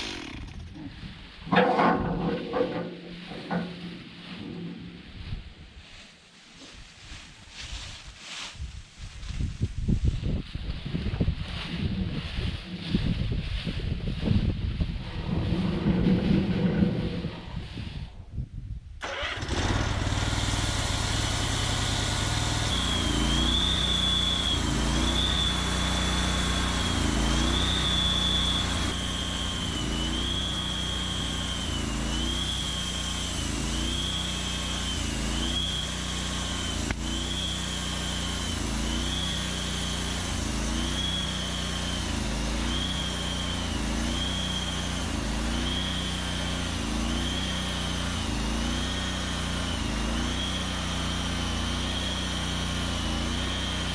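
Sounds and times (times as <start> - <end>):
sawmill engine running: 0.0 - 5.0, 15.0 - 17.8, 19.0 - 53.9
high whine: 21.1 - 50.7.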